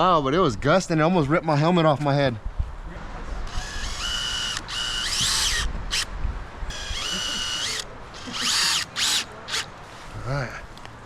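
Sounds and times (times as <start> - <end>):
wind rumble on microphone: 2.3 - 4.2, 5.0 - 7.0
power drill motor whining: 3.5 - 6.1, 6.7 - 9.7.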